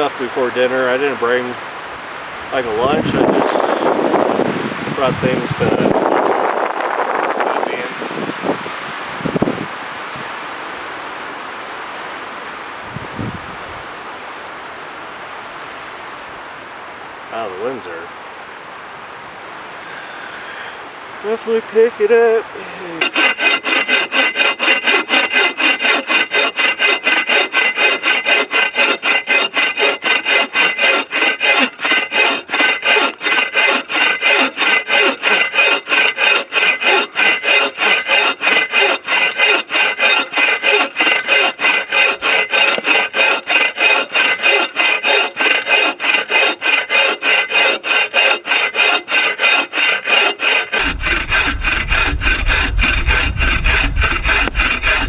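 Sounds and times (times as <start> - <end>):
hand saw cutting log: 2.6 - 4.3, 22.6 - 55.0.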